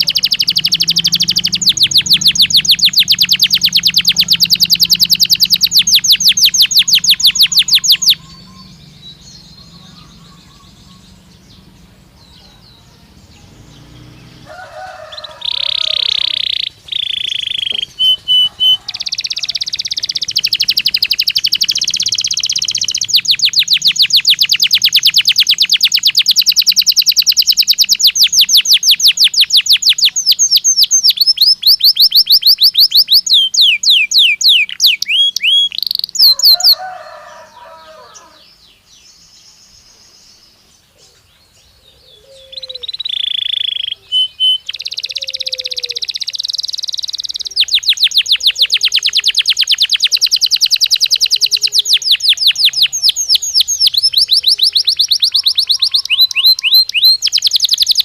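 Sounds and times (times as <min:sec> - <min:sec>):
fast rolling trill: 0:00.0 - 0:12.2
canary singing: 0:00.0 - 0:58.0.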